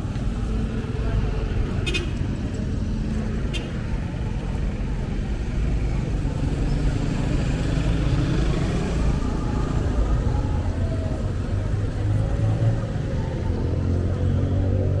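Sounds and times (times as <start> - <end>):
street traffic rumble: 0.0 - 15.0.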